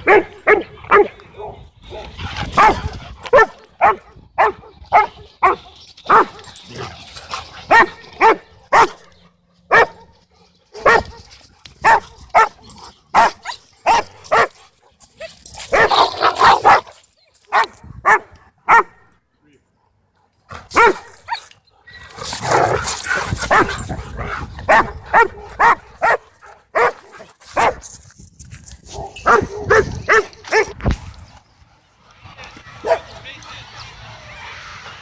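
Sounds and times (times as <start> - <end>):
dog barking: 0.0 - 6.4, 7.7 - 9.1, 9.7 - 10.1, 10.8 - 11.2, 11.8 - 12.6, 13.2 - 14.5, 17.5 - 19.0, 20.7 - 21.2, 23.5 - 23.8, 24.7 - 26.2, 26.8 - 27.0, 27.6 - 27.8, 28.9 - 30.8, 32.8 - 33.1.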